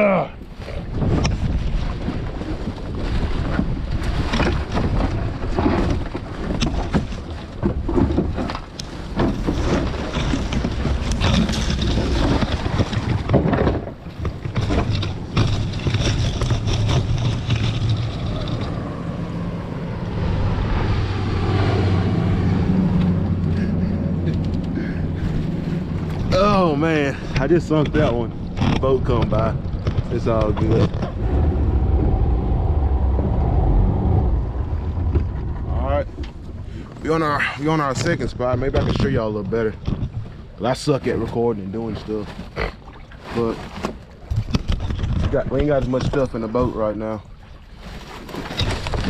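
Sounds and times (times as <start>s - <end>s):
low boat motor hum: 0.0s - 49.0s
wind on microphone: 0.3s - 40.6s, 43.7s - 49.0s
branches scraping against a boat: 0.4s - 19.7s, 22.3s - 49.0s.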